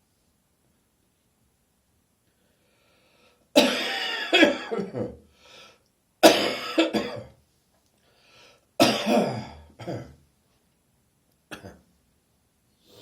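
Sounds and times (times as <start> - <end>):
quiet breaths: 2.2 - 3.6, 5.2 - 6.0, 7.8 - 8.8, 12.7 - 13.0
person coughing: 3.6 - 5.2, 6.2 - 7.3, 8.8 - 10.2, 11.5 - 11.8.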